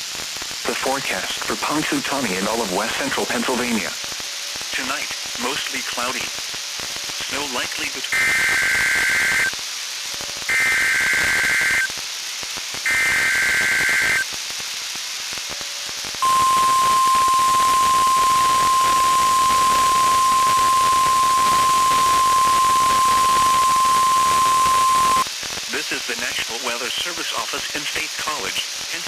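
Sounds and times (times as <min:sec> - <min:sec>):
radio static hiss: 0:00.0 - 0:29.0
warbling digital data bursts: 0:01.4 - 0:09.6, 0:10.3 - 0:12.0, 0:12.8 - 0:14.4, 0:15.4 - 0:25.8
steady warning alarm tone: 0:16.2 - 0:25.2.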